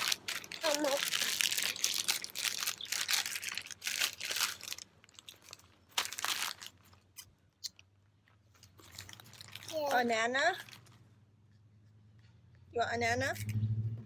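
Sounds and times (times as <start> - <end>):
plastic packaging crinkling: 0.0 - 7.8, 8.5 - 11.0.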